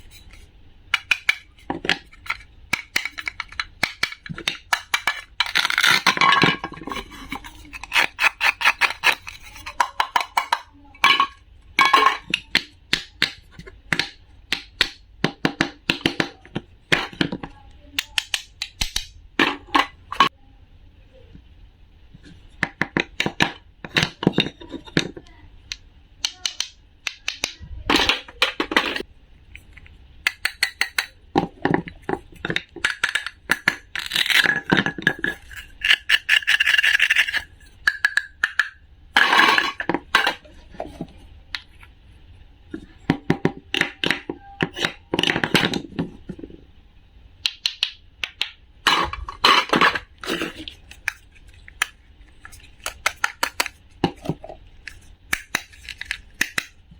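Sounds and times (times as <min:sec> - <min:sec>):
small hard objects clicking: 0:00.9 - 0:11.2, 0:25.7 - 0:40.4, 0:47.4 - 0:56.8.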